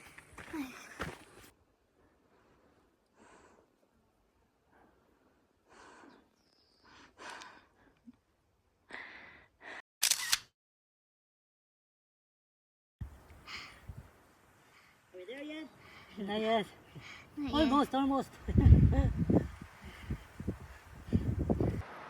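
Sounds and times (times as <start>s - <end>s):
person breathing heavily and gasping: 13.4s - 14.0s, 19.1s - 21.6s
rustle on the microphone: 17.4s - 22.0s.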